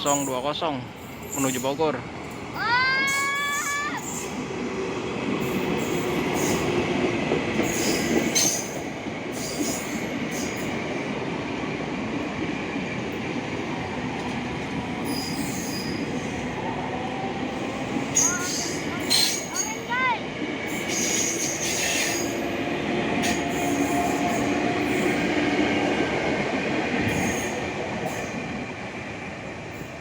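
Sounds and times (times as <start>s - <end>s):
train wheels rumbling on rails: 0.0s - 30.0s
wheel squeal: 15.0s - 16.1s.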